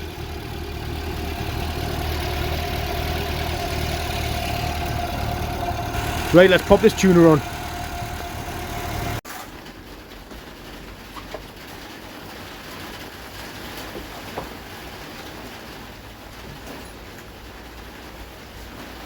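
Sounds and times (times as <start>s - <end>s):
car engine idling: 0.0s - 9.2s.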